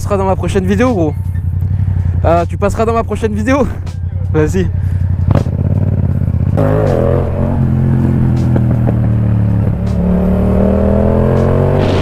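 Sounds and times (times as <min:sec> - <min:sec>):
motorcycle engine accelerating: 0:03.6 - 0:12.0.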